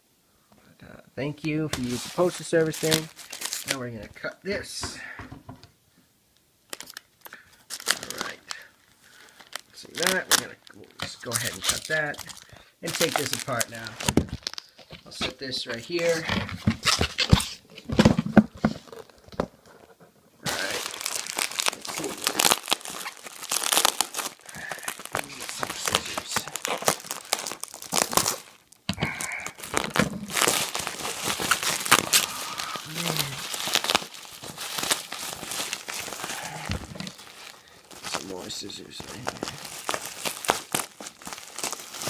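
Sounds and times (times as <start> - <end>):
packing material crinkling and tearing: 1.5 - 4.6, 6.7 - 17.6, 20.4 - 42.0.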